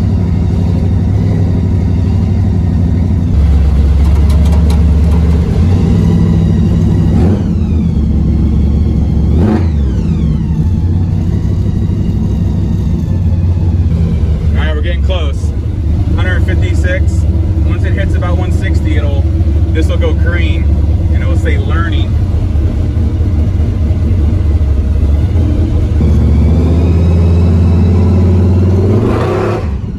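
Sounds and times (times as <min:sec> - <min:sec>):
truck engine rumbling: 0:00.0 - 0:29.9.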